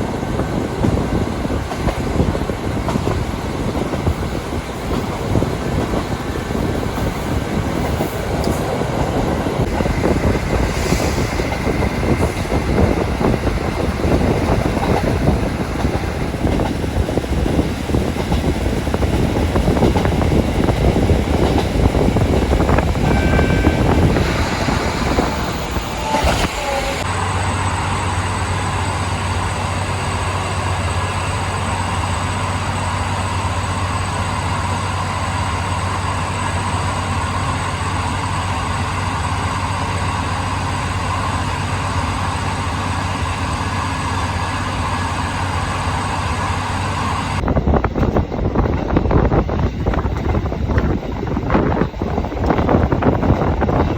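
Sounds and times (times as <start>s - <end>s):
wind buffeting microphone: 0.0s - 27.1s, 46.7s - 53.9s
diesel railcar engine hum: 0.0s - 53.9s
rail running noise: 0.0s - 53.9s.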